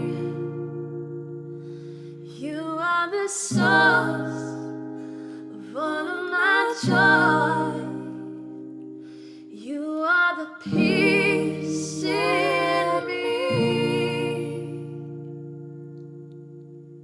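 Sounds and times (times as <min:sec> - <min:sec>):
woman singing worship song: 0:00.0 - 0:00.8, 0:02.3 - 0:08.6, 0:09.5 - 0:15.4
acoustic guitar chords: 0:00.0 - 0:17.0.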